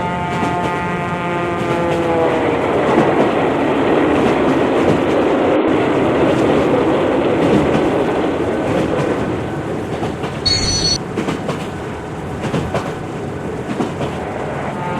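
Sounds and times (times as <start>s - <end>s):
train rumbling on rails: 0.0s - 14.9s
high-pitched squeal: 10.5s - 11.0s.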